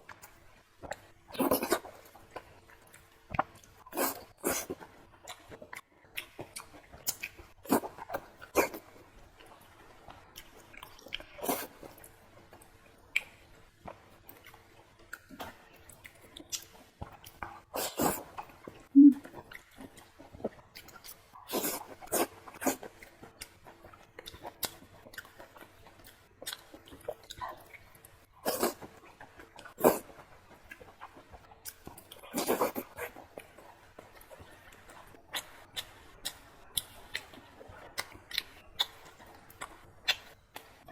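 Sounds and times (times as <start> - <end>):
close chewing sounds: 0.0 - 40.9.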